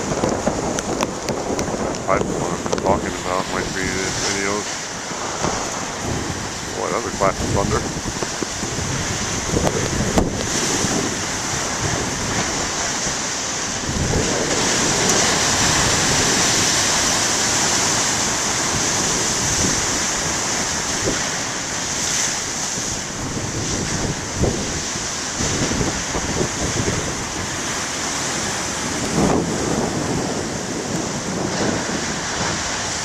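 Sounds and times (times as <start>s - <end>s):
ocean surf breaking: 0.0s - 33.0s.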